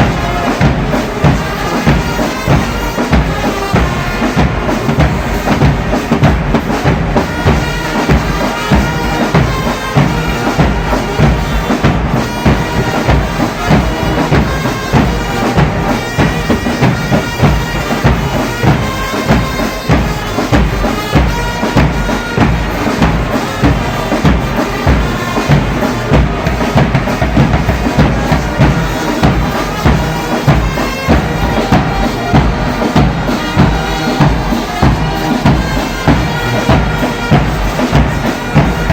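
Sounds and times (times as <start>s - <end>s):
brass band playing: 0.0s - 38.9s
steady drum beat: 0.0s - 38.9s.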